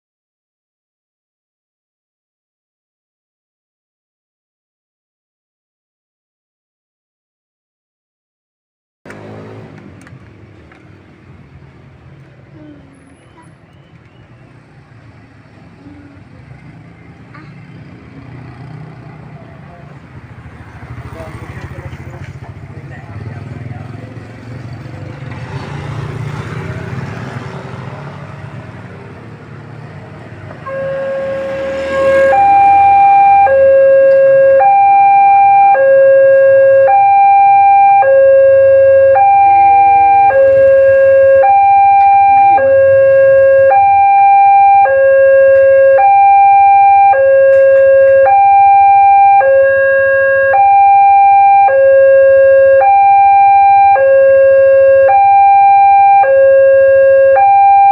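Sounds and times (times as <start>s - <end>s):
two-tone warning siren: 30.2s - 57.9s.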